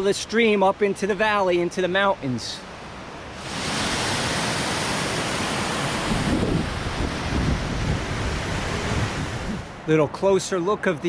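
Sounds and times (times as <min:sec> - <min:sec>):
mountain stream rushing: 0:00.0 - 0:10.1
wind buffeting microphone: 0:03.3 - 0:09.9.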